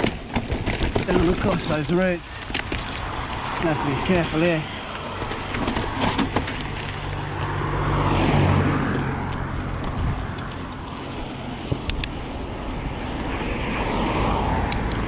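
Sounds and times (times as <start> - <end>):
bike knocking over roots: 0.0 - 8.4
mountain bike rolling: 0.0 - 15.0.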